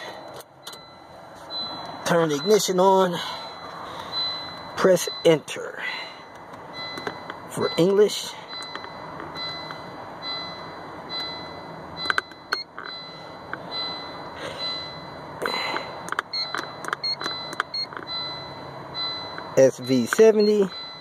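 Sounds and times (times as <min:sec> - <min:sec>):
car door warning chime: 0:00.0 - 0:06.0, 0:06.7 - 0:21.0
short electronic beeps: 0:00.0 - 0:21.0.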